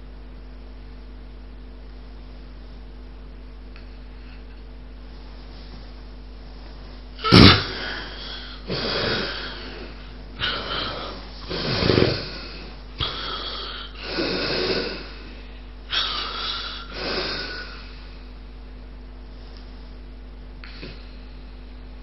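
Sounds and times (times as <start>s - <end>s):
person snorting loudly: 7.2s - 15.3s, 15.9s - 18.0s
person snoring: 7.2s - 18.1s.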